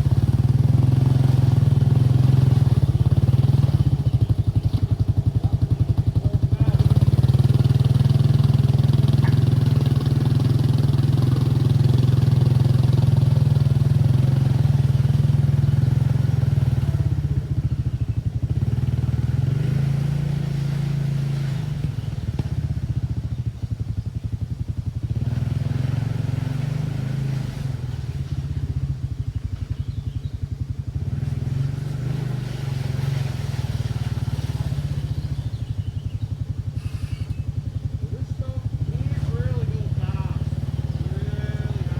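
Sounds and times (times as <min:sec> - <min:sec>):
atv engine revving: 0:00.0 - 0:41.9.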